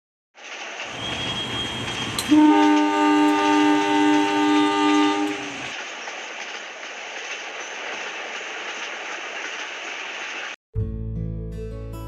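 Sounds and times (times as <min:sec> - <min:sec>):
train rushing past: 0:00.4 - 0:10.6
train horn: 0:00.9 - 0:05.8.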